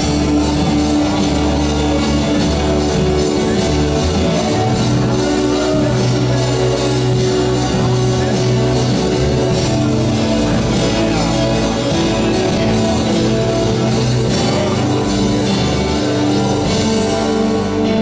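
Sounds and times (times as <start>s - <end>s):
drum kit: 0.0s - 18.0s
electric guitar: 0.0s - 18.0s
worship band playing: 0.0s - 18.0s.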